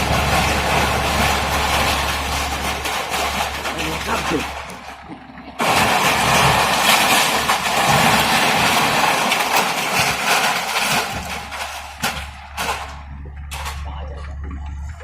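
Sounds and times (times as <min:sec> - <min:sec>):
debris crashing down: 0:00.0 - 0:13.9
excavator engine running: 0:00.0 - 0:15.0.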